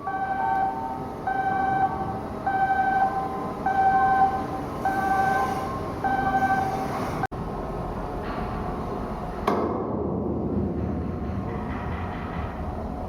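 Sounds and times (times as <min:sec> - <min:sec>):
two-note electronic warning chime: 0:00.0 - 0:06.7
machinery noise: 0:00.0 - 0:09.5.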